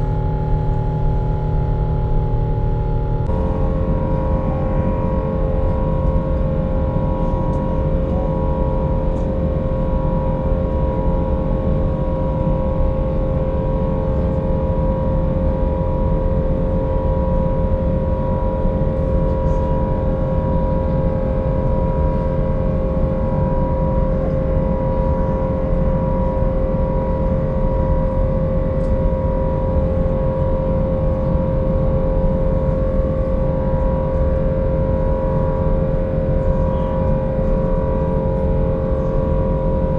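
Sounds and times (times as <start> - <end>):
engine tones hum: 0.0 - 12.6
airliner cabin rumble: 0.0 - 39.9.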